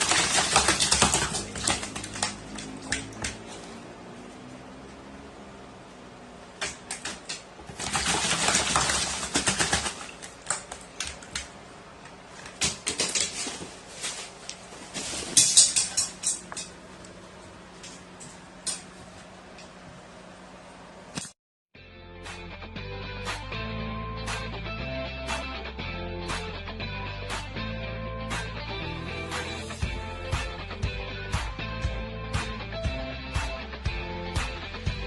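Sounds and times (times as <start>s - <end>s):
animal tapping and clicking: 0.0s - 3.6s, 6.6s - 13.3s.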